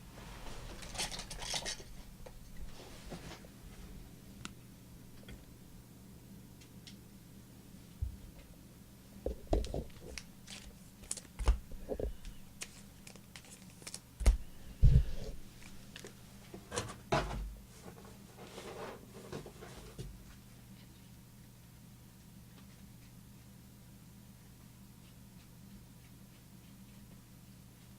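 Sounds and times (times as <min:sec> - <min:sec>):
faint steady hum: 0:00.0 - 0:27.9
crinkly rustling of card packs: 0:09.6 - 0:14.5, 0:15.4 - 0:16.2.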